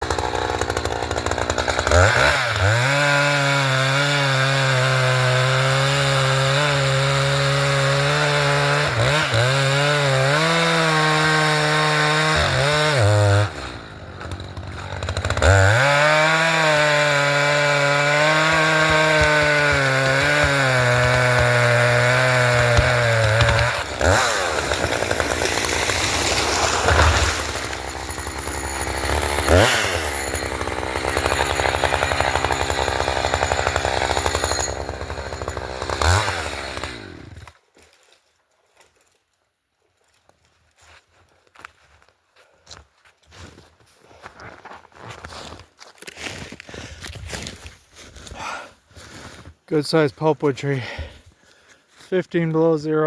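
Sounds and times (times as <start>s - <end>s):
chainsaw cutting wood: 0.0s - 37.6s.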